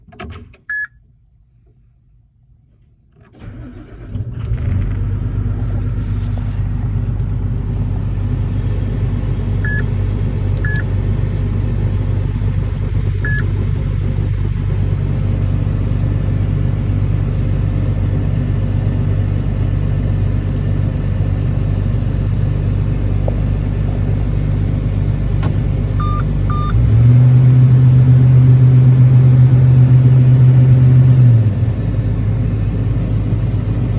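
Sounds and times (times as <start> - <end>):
excavator diesel engine: 3.4 - 33.9
short electronic beeps: 9.6 - 9.9, 10.6 - 10.8, 13.2 - 13.4, 26.0 - 26.8.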